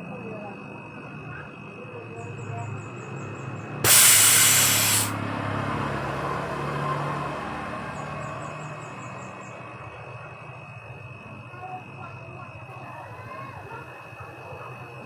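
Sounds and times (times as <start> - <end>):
pressurised air hissing: 3.8 - 5.2.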